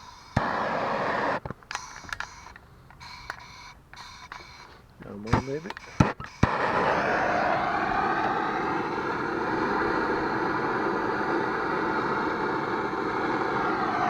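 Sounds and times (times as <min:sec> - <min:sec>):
torch flame hissing: 0:00.0 - 0:02.4, 0:05.2 - 0:14.0
gas torch ignition click: 0:00.0 - 0:14.0.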